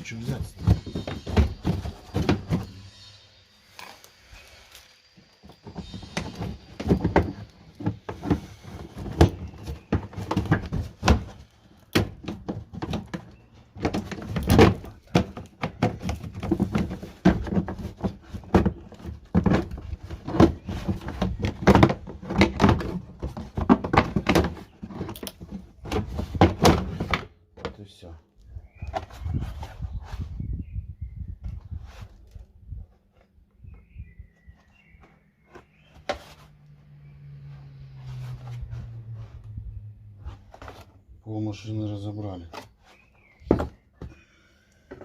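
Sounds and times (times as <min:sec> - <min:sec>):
hand tools knocking and clunking: 0:00.1 - 0:02.9, 0:05.4 - 0:27.9.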